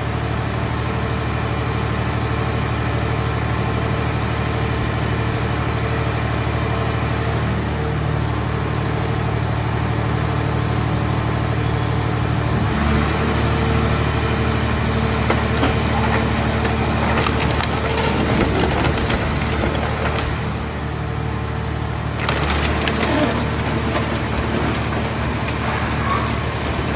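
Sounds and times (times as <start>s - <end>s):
baler engine and hydraulic hum: 0.2s - 26.9s
metal being crushed: 14.6s - 21.0s, 22.0s - 26.9s.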